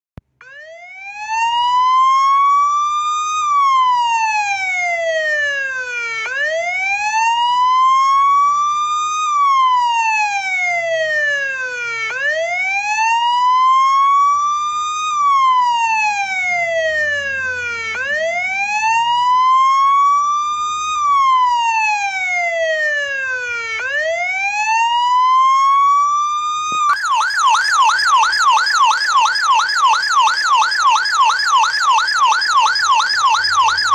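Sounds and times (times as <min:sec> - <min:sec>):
police siren wailing and yelping: 0:00.4 - 0:33.9.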